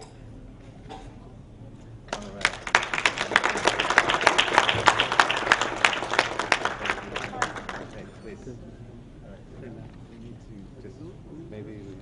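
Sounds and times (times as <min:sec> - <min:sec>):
audience applauding: 0:02.1 - 0:08.2.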